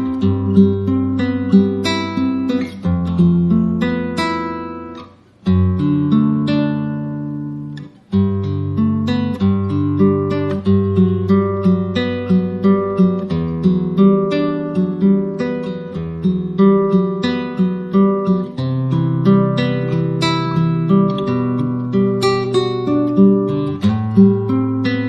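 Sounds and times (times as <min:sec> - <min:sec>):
acoustic guitar music: 0:00.0 - 0:25.0.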